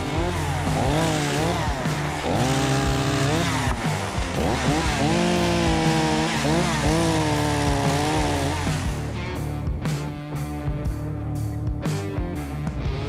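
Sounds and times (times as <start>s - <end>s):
chainsaw revving: 0.0s - 10.1s.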